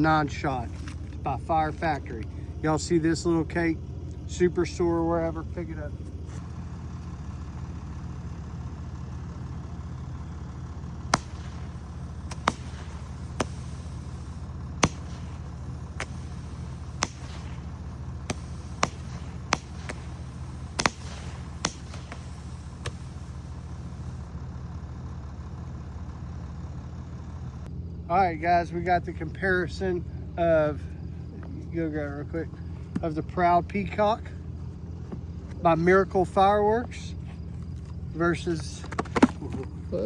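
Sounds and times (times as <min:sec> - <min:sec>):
steady low hum: 0:00.0 - 0:40.0
fireworks firing sharp reports: 0:10.9 - 0:24.5.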